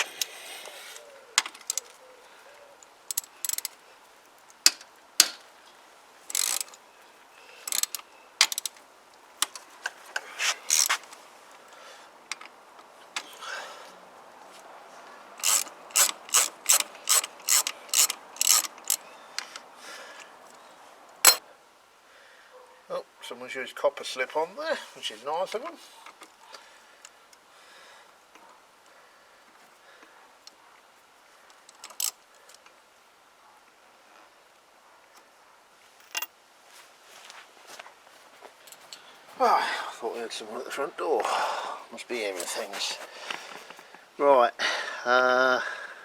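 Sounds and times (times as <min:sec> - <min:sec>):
socket ratchet wrench clicking: 0:01.4 - 0:01.9, 0:03.1 - 0:03.8, 0:06.3 - 0:06.8, 0:07.6 - 0:08.8, 0:10.7 - 0:11.0, 0:15.4 - 0:19.6, 0:31.7 - 0:32.2.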